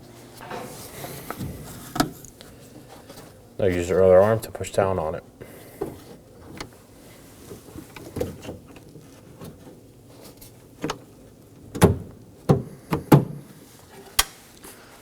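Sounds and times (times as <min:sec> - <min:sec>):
door handle knocks and clunks: 0:11.8 - 0:13.4.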